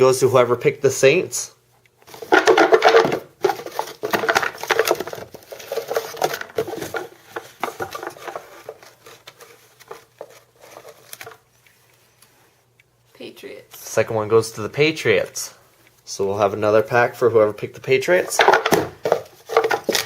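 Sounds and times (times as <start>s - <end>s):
cards rustling and clicking: 1.8s - 12.4s, 18.1s - 20.0s.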